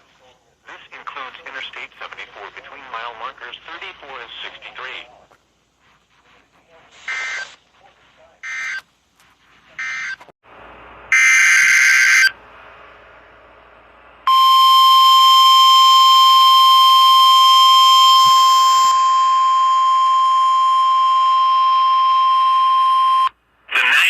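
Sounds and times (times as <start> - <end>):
faint radio hiss: 0.0 - 11.0, 23.4 - 24.0
steady alarm beep tone: 8.4 - 8.8, 11.1 - 12.3, 14.3 - 23.3.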